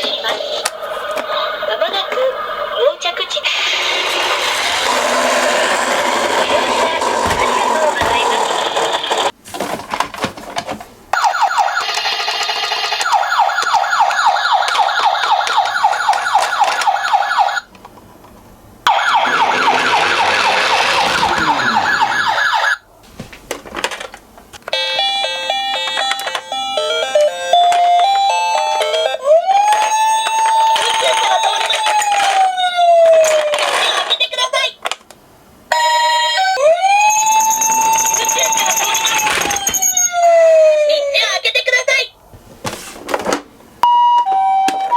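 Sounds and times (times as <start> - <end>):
toy ambulance electronic siren: 11.2 - 17.7, 18.9 - 22.8, 24.7 - 33.8, 35.7 - 41.1, 43.8 - 44.9.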